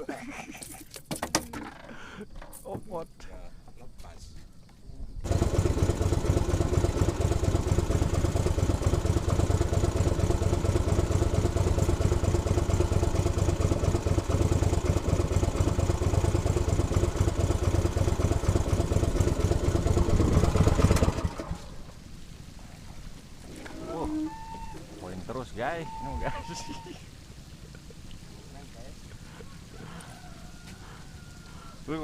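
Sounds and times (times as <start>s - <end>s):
small boat engine running: 5.2s - 21.9s, 23.6s - 31.9s.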